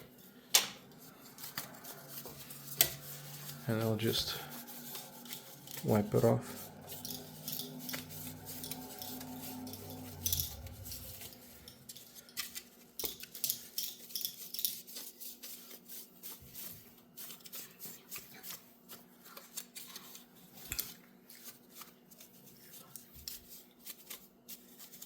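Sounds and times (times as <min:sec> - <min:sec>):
low steady hum: 0:00.0 - 0:12.9
rag rubbing plastic: 0:00.9 - 0:11.7.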